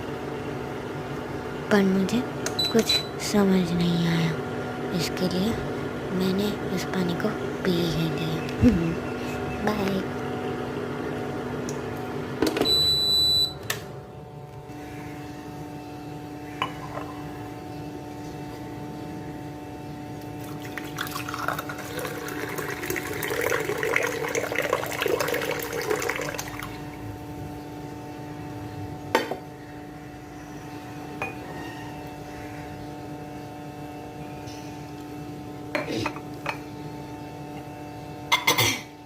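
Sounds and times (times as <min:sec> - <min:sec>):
steady electrical hum: 0:00.0 - 0:39.0
water pouring into a glass: 0:20.4 - 0:26.8.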